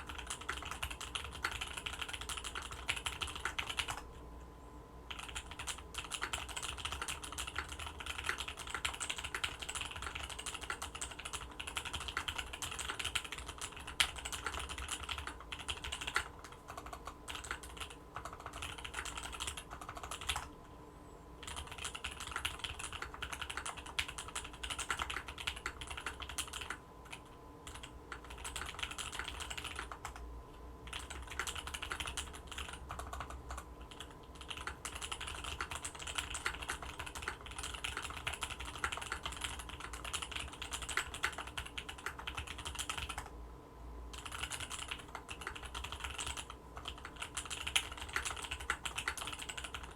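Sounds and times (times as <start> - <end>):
fast typing on mechanical keyboard: 0.0 - 4.1, 5.1 - 20.6, 21.4 - 30.2, 30.8 - 43.3, 44.1 - 49.9.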